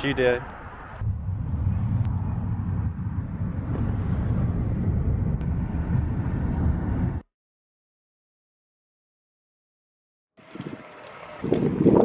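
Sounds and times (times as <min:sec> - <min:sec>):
vehicle rumble and road noise: 0:00.0 - 0:07.2.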